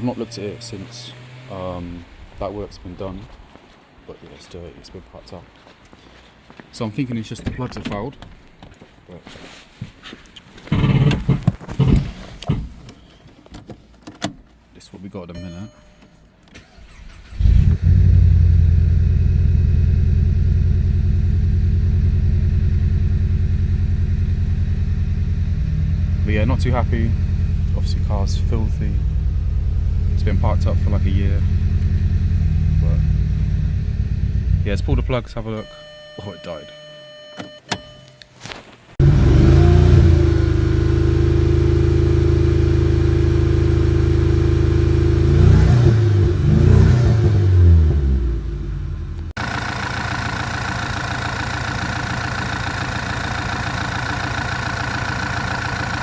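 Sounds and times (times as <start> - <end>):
car engine idling with misfire: 10.6 - 12.6, 16.6 - 35.4, 39.0 - 56.0.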